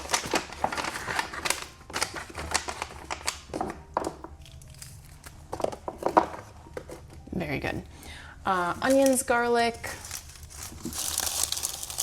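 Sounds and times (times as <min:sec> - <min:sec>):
food packaging crinkling: 0:00.0 - 0:05.4, 0:08.8 - 0:12.0.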